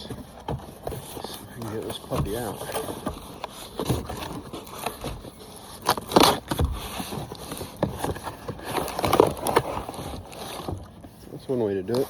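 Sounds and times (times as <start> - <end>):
cardboard box scraping and rustling: 0.0 - 12.0.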